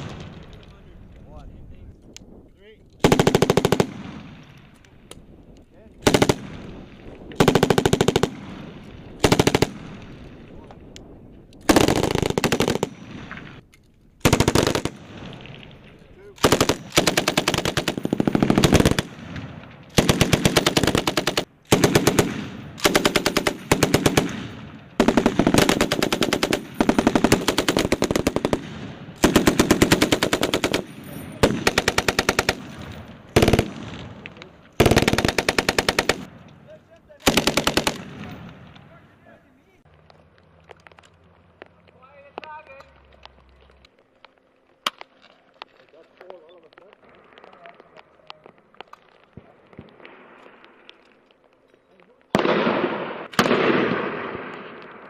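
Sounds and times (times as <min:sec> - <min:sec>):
machine gun bursts: 0:03.0 - 0:03.9, 0:09.2 - 0:09.8, 0:11.7 - 0:12.9, 0:14.2 - 0:15.0, 0:16.4 - 0:19.1, 0:20.0 - 0:24.3, 0:25.0 - 0:28.6, 0:29.2 - 0:32.8, 0:34.8 - 0:36.3, 0:37.2 - 0:38.1.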